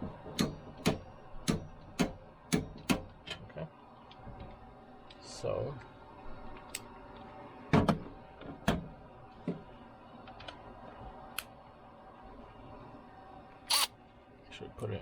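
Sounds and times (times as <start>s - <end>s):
tools knocking and clicking: 0.2s - 3.4s.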